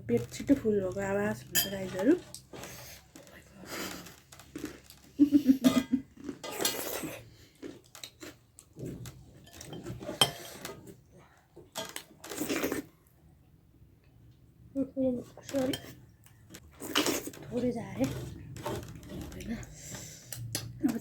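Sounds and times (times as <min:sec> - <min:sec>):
dishes and utensils clinking: 0:01.5 - 0:02.2, 0:09.3 - 0:11.0
chewing and mouth noises: 0:02.2 - 0:05.4, 0:06.0 - 0:09.7.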